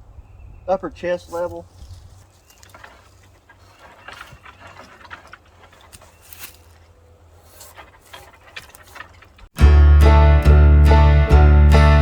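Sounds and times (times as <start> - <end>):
wooden poles clicking and scraping: 1.2 - 9.6.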